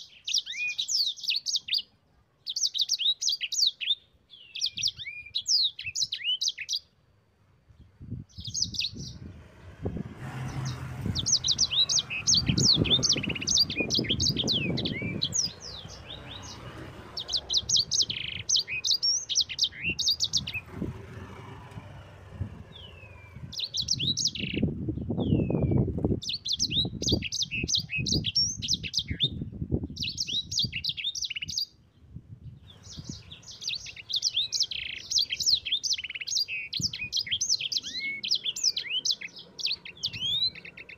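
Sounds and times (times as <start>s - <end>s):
canary singing rapid chirps: 10.5s - 29.4s, 32.7s - 40.9s
low irregular rumbling: 20.2s - 26.1s.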